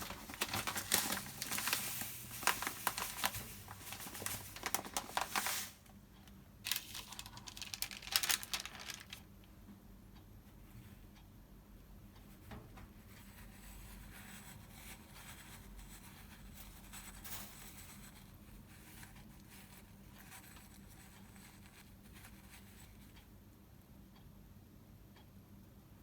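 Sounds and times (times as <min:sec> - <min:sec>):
faint rustling: 0:00.0 - 0:05.8, 0:06.7 - 0:09.2
low room hum: 0:00.0 - 0:26.0.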